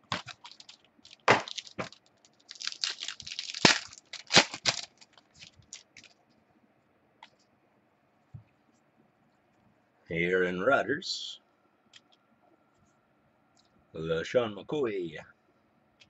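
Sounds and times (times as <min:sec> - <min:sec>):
packaging torn and crinkled: 0:00.0 - 0:06.2
handling clicks and rustles: 0:00.0 - 0:06.3.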